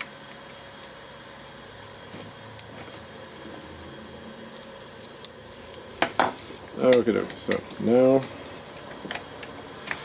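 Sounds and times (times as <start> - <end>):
low background hum: 0.0 - 10.0.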